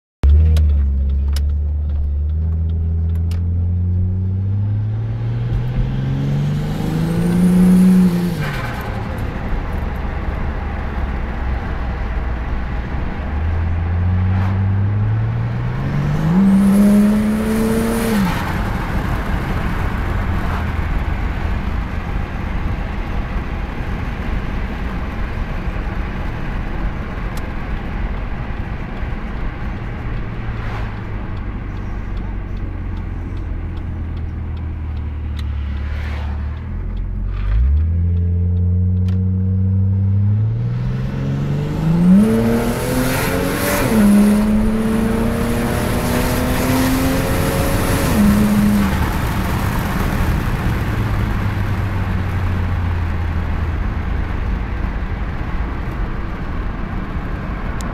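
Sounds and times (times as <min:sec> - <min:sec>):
car engine accelerating hard: 0:00.2 - 0:57.9
road noise while cruising: 0:00.2 - 0:57.9.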